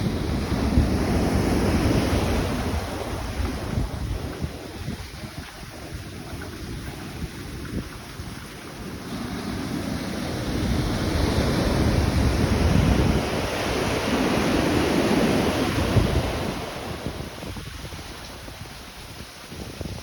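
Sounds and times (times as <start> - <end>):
ocean surf breaking: 0.0 - 4.5, 8.7 - 19.0
wind rumbling on microphone: 0.0 - 20.0.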